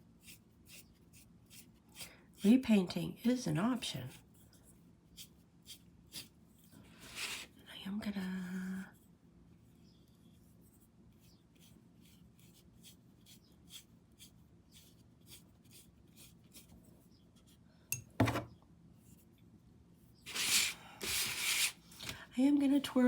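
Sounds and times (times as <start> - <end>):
paintbrush strokes: 9.0 - 17.6
knock: 18.2 - 18.5.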